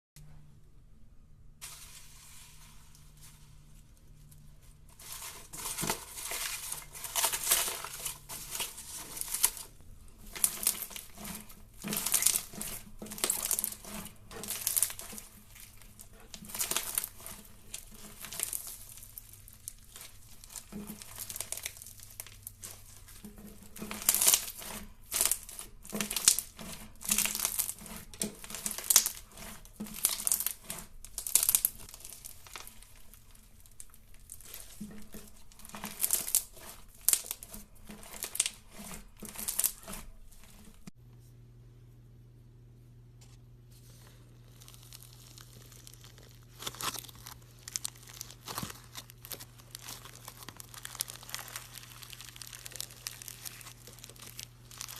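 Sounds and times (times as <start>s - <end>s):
crunchy slime squeezed by hand: 44.4s - 54.9s.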